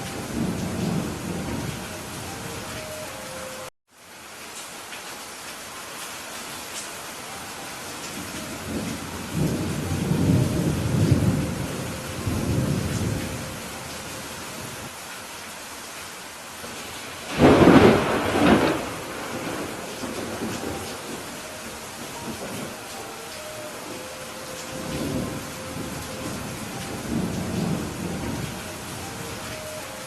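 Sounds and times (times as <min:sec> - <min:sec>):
steady rain: 0:00.0 - 0:30.0
rolling thunder rumble: 0:08.5 - 0:13.9, 0:17.3 - 0:22.8
sharp thunderclap: 0:17.3 - 0:20.8.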